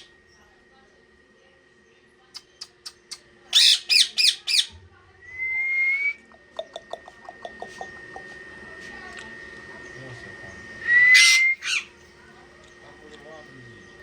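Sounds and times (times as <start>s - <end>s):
parrot calling: 2.4s - 4.7s, 10.9s - 11.9s
parrot rising whistle: 5.3s - 6.2s, 10.8s - 11.9s
parrot short chirps: 11.2s - 11.9s.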